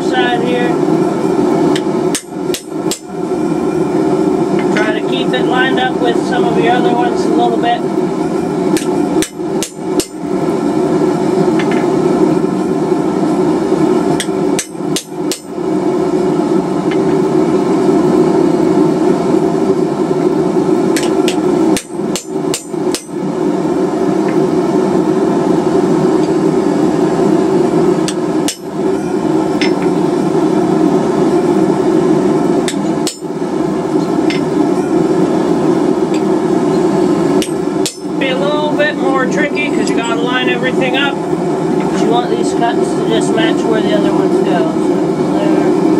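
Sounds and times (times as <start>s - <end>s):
hammer striking a chisel: 8.8s - 10.2s, 21.0s - 23.2s, 28.1s - 28.7s, 32.7s - 33.3s, 37.4s - 38.1s.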